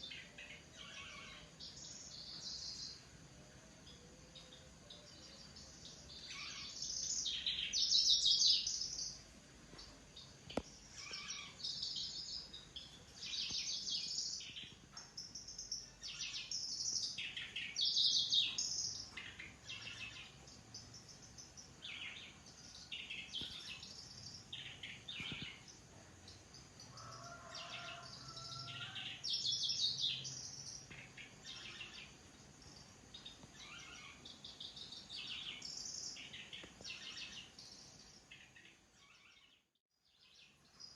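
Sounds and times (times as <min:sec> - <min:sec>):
bird singing buzzy phrases: 0:03.8 - 0:40.9.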